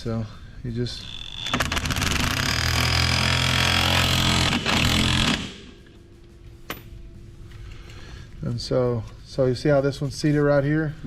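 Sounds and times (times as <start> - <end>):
power tool running nut down: 1.5 - 5.6.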